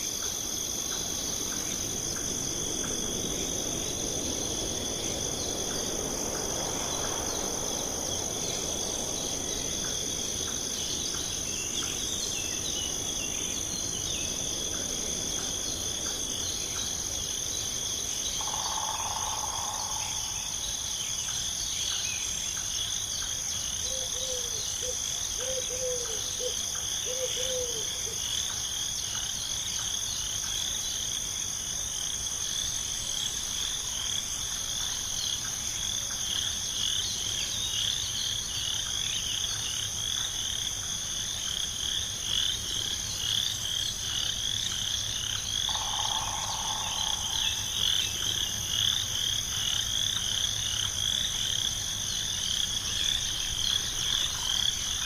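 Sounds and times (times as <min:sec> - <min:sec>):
crickets trilling: 0:00.0 - 0:55.0.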